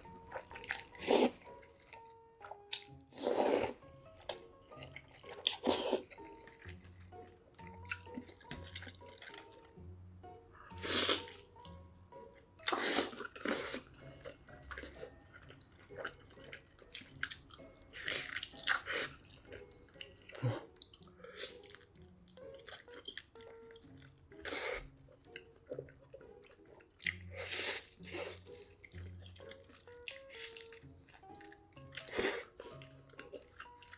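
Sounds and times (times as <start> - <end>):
chewing: 0.2 - 9.8, 10.6 - 33.9
wet slurping: 0.8 - 1.5, 3.1 - 3.8, 10.7 - 11.4, 12.7 - 13.9.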